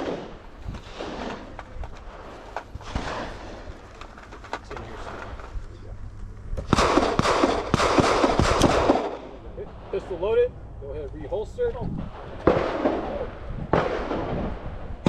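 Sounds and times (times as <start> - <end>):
rapid gunshots: 0.0 - 4.0, 6.6 - 10.0, 12.1 - 14.7.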